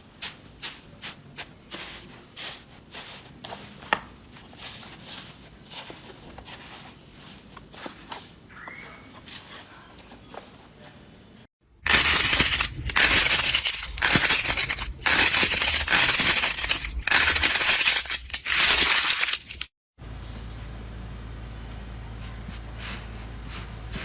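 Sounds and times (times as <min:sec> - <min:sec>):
crunchy slime crackling: 0:11.8 - 0:19.6.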